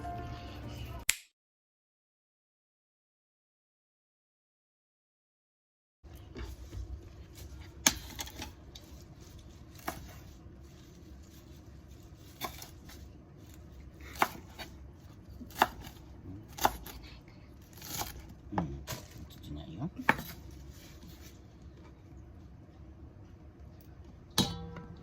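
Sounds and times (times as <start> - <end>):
low steady hum: 6.1 - 25.0.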